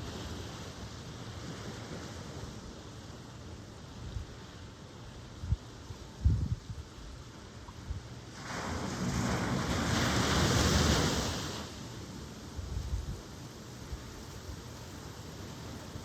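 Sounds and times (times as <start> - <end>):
steady surf: 0.0 - 16.0
wind buffeting microphone: 5.4 - 7.0
ocean wave breaking: 8.3 - 12.2.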